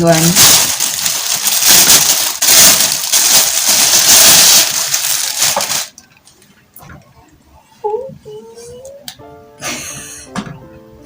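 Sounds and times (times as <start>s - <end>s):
plastic packaging crinkling: 0.0s - 6.0s.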